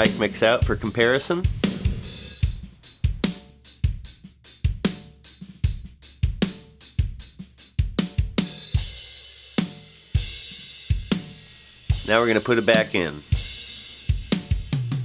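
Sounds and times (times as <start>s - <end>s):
cymbal crashes: 0.0s - 3.4s
dry drum kit groove: 0.0s - 15.0s.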